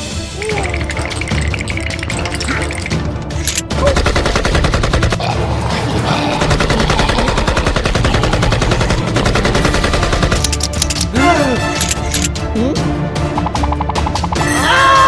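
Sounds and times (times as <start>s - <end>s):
loud rapid rattling: 0.8s - 5.1s, 8.7s - 11.1s, 11.8s - 12.3s.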